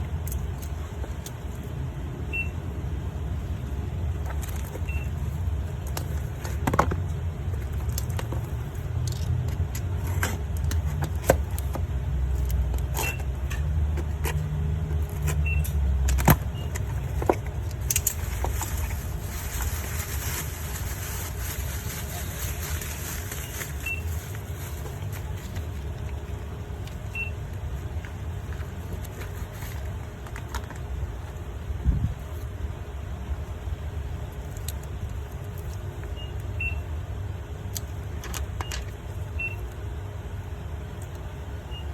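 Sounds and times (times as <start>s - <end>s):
packaging crinkling: 14.2s - 31.4s.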